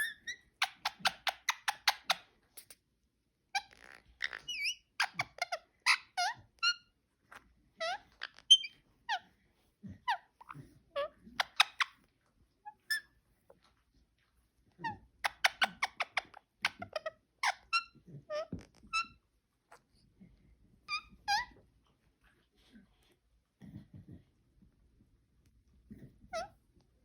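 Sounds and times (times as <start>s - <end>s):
parakeet chirping: 3.5s - 6.9s, 7.8s - 9.2s, 10.1s - 11.9s, 15.2s - 19.2s.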